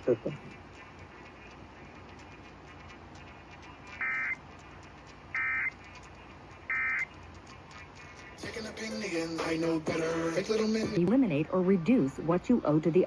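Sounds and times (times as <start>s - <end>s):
digital data bursts: 4.0s - 4.4s, 5.3s - 5.8s, 6.7s - 7.1s.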